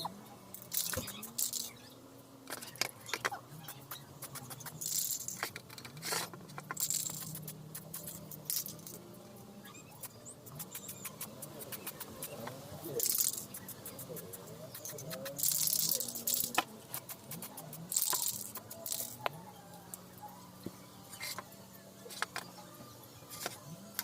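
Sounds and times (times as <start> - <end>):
spray can clicks and rattling: 0.6 - 1.8, 2.5 - 9.0, 13.0 - 19.3
spray can hissing: 6.8 - 8.8, 13.0 - 19.2.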